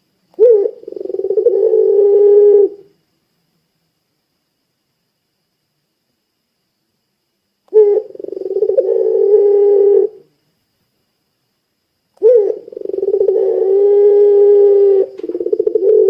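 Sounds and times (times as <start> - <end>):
dove cooing: 0.4 - 2.9, 7.7 - 10.3, 12.2 - 16.0.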